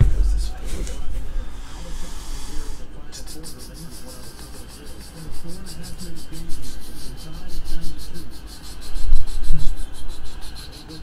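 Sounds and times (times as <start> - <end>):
heavy low bumps: 0.0 - 1.6.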